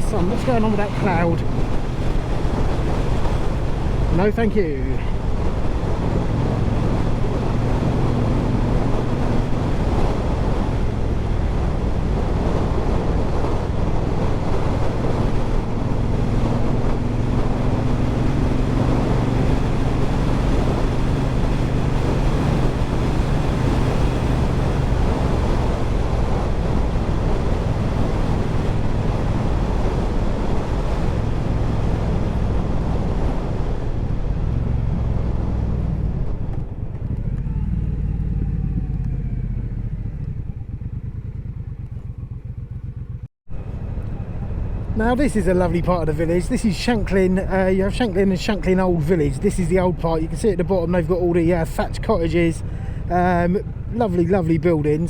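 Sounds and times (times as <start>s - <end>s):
wind noise on microphone: 0.0s - 55.0s
motorcycle engine running: 5.1s - 45.0s.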